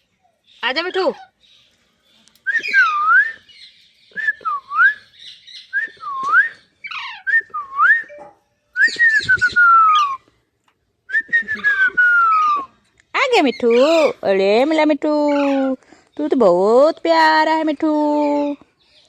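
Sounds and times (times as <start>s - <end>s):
clear whistles: 2.4s - 10.2s, 11.1s - 12.7s
parakeet chirps and squeaks: 6.8s - 7.3s, 12.3s - 15.8s.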